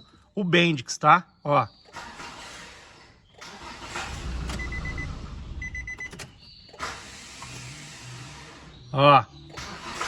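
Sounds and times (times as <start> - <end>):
starter motor whirring: 1.9 - 10.0
electronic beeps: 4.5 - 6.7.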